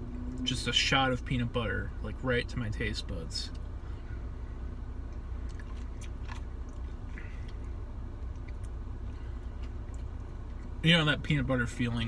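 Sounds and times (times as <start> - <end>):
low hum: 0.0 - 12.0
person chewing ice cream: 5.1 - 10.8.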